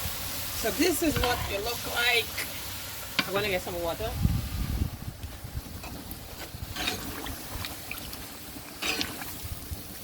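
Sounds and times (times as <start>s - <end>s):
wind rumble on microphone: 3.9s - 10.0s.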